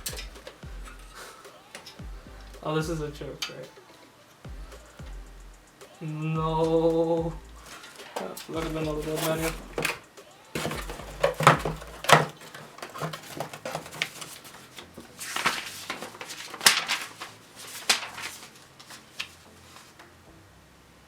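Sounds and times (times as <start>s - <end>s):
computer parts clicking and clattering: 7.7s - 10.0s, 10.6s - 18.5s.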